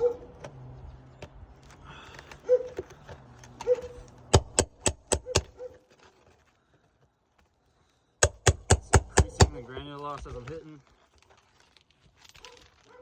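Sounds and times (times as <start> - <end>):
hammer striking metal nail puller: 4.3 - 5.6, 8.2 - 9.6.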